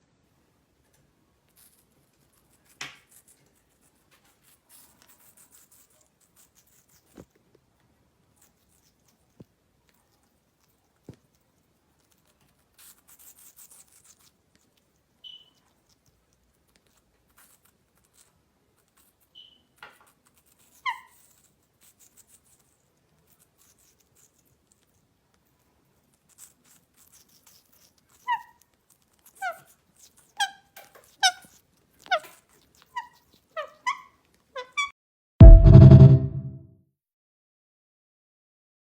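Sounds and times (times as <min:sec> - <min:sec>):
parrot squeaky calls: 0:15.2 - 0:15.6, 0:32.9 - 0:34.9.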